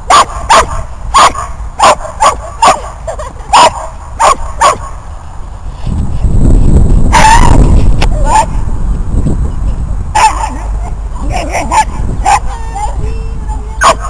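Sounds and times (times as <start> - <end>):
dog barking: 0.1 - 5.0, 10.2 - 10.7, 11.3 - 12.5, 13.8 - 14.0.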